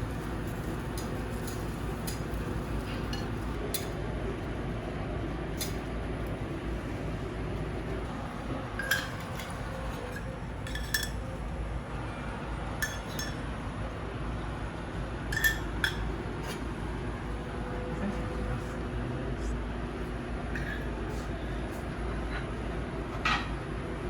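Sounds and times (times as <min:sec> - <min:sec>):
steady low hum: 0:00.0 - 0:24.0
cutlery clinking on dishes: 0:10.7 - 0:11.2, 0:15.4 - 0:16.0.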